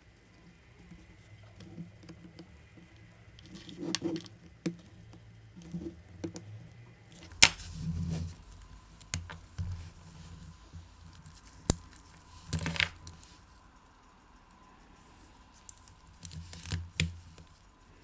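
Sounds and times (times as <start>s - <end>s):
soft handling noise: 0.9s - 6.5s, 7.1s - 18.0s
watch parts clicking and tapping: 1.6s - 5.0s, 7.2s - 18.0s.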